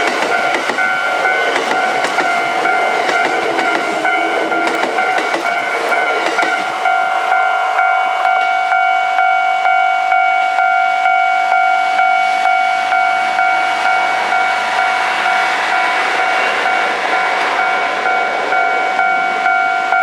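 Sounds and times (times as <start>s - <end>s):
level-crossing alarm ringing: 0.0s - 20.0s
train running noise: 0.0s - 20.0s.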